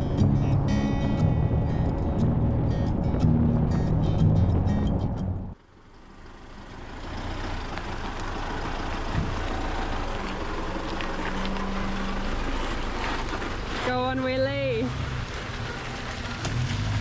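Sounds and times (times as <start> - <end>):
background music: 0.0 - 5.6
vehicle driving noise: 0.0 - 17.0.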